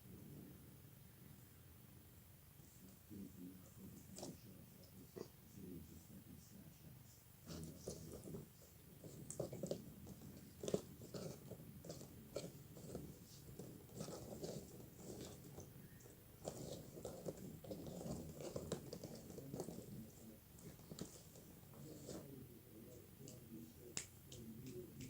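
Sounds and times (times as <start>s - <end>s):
slime squelching: 7.5s - 25.0s.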